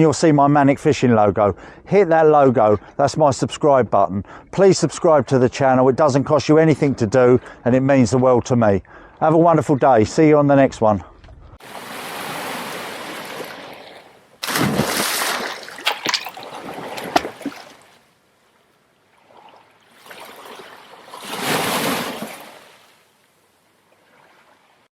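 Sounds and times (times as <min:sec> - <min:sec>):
sea water splashing: 0:11.6 - 0:23.1.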